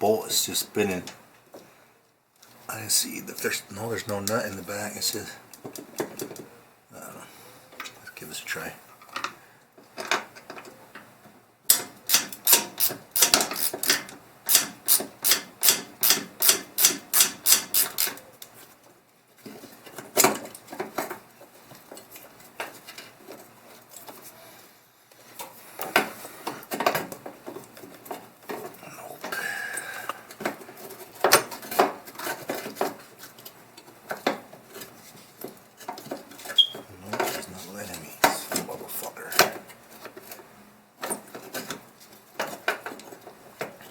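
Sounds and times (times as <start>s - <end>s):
ratchet wrench clicking: 11.7s - 18.2s.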